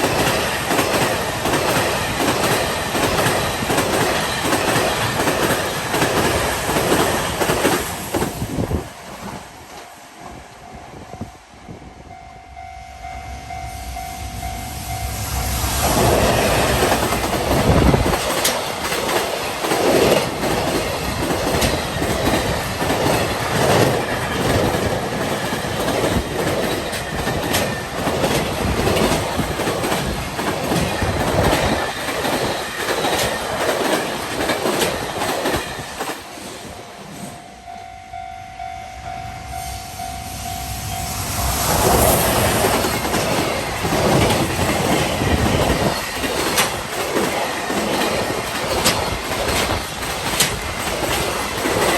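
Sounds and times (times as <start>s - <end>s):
train wheels clattering over rail joints: 0.0s - 9.9s, 15.9s - 36.6s, 42.1s - 51.9s
level crossing warning bell: 10.5s - 15.7s, 37.4s - 41.4s.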